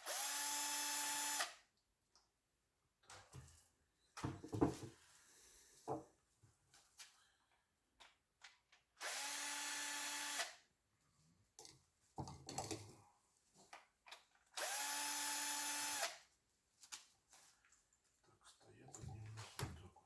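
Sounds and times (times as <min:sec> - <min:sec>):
electric drill bursts: 0:00.0 - 0:01.6, 0:09.0 - 0:10.6, 0:14.6 - 0:16.2.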